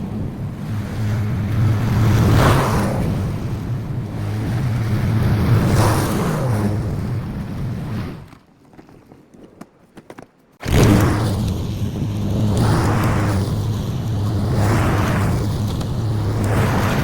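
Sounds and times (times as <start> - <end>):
lawn mower engine running: 10.6 - 17.0.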